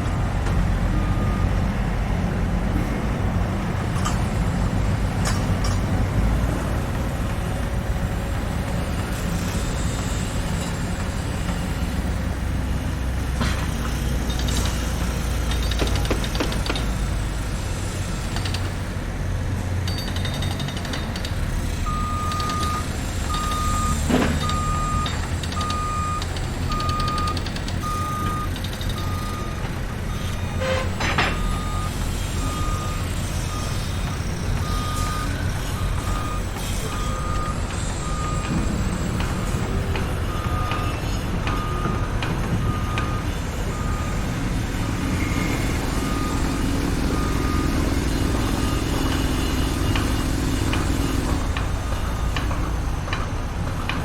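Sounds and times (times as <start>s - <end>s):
reversing alarm beeping: 0.0s - 1.6s, 21.8s - 52.7s
heavy machinery rumbling: 0.0s - 54.0s
knocks and clanks: 30.6s - 31.9s, 36.0s - 43.2s.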